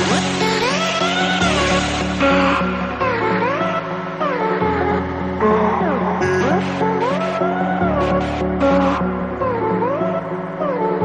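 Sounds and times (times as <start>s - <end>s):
pulsing bass line: 6.2s - 7.0s.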